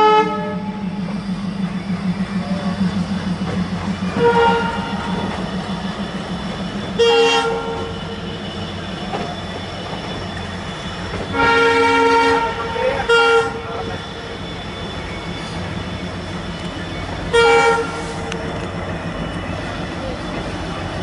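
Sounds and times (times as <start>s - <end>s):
locomotive horn blasts: 0.0s - 0.9s, 4.0s - 5.8s, 6.5s - 10.0s, 11.3s - 14.4s, 17.3s - 18.4s
train running rumble: 0.0s - 21.0s.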